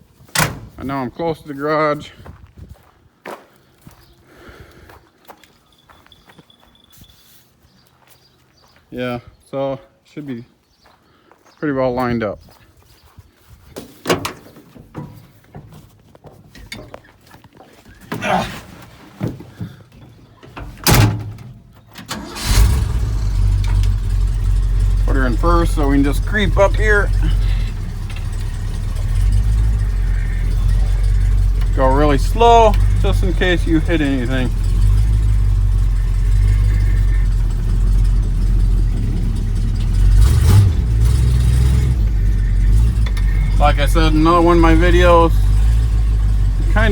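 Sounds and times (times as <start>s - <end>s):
truck door shutting: 0.3s - 0.8s, 14.0s - 15.7s, 20.4s - 43.6s
truck engine starting and idling: 19.7s - 46.9s.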